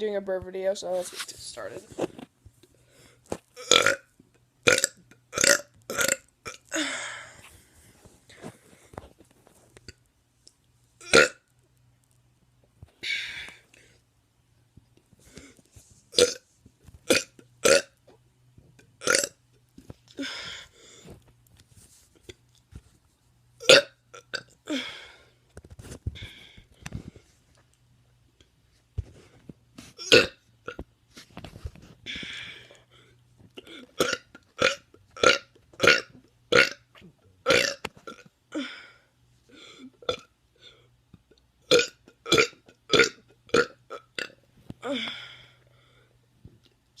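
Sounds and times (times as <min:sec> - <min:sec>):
person burping: 0:03.6 - 0:04.1, 0:04.7 - 0:07.3, 0:11.0 - 0:11.4, 0:16.2 - 0:16.4, 0:17.1 - 0:18.0, 0:19.0 - 0:19.4, 0:23.6 - 0:24.9, 0:30.0 - 0:30.4, 0:33.6 - 0:38.7, 0:41.7 - 0:45.2.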